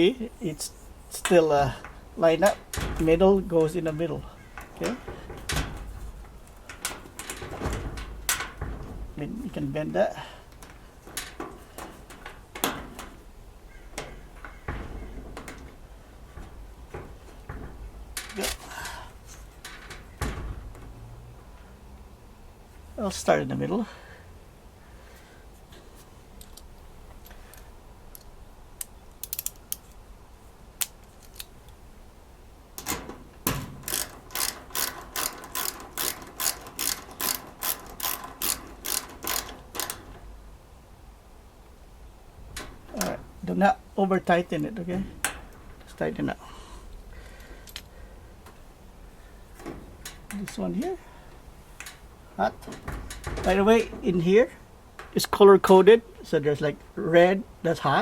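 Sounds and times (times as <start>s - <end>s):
small metal parts clicking: 4.6s - 9.1s, 16.4s - 20.8s, 26.4s - 30.0s, 30.8s - 31.8s, 32.8s - 40.2s, 46.9s - 48.6s, 51.8s - 54.0s
ratchet wrench clicking: 33.8s - 40.0s.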